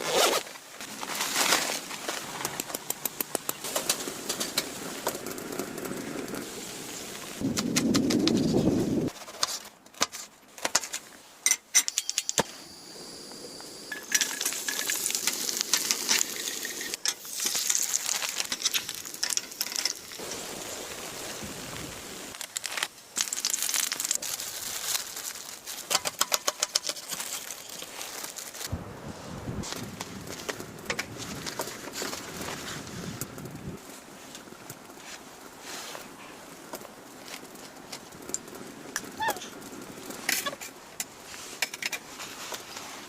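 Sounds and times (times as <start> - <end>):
objects clicking and clinking: 9.4 - 12.5, 13.9 - 20.2.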